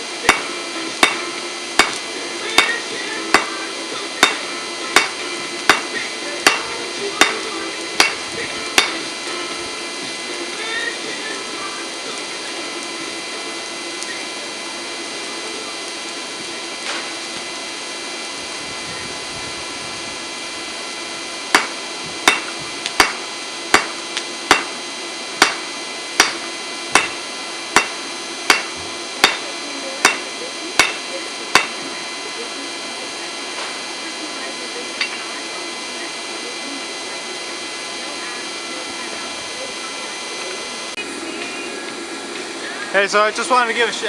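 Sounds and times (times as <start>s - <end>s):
steady background hum: 0.0s - 44.0s
hammer blows on metal: 0.2s - 9.8s, 21.5s - 24.8s, 25.4s - 29.4s, 30.0s - 31.8s.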